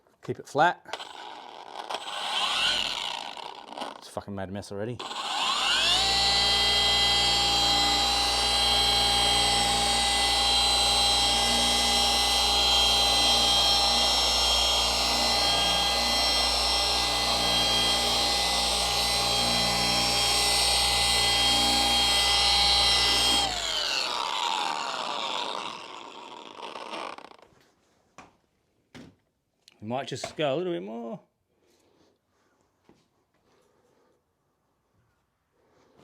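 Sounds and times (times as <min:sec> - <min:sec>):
electric polisher motor whine: 0:01.0 - 0:04.0, 0:05.0 - 0:27.4.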